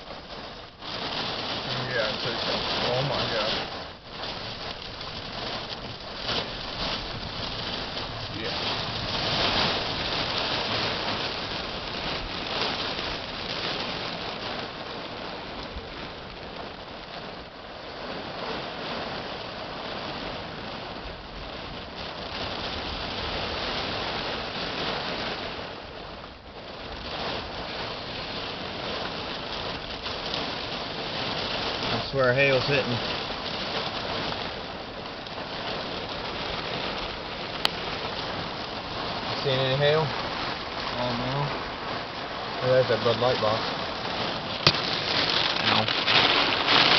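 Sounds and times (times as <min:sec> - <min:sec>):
heavy rain pouring: 0:00.0 - 0:46.9.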